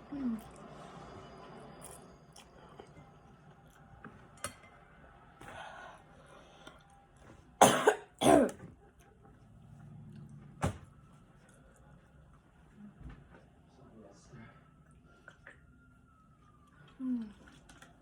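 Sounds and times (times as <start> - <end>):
person coughing: 7.6 - 8.6.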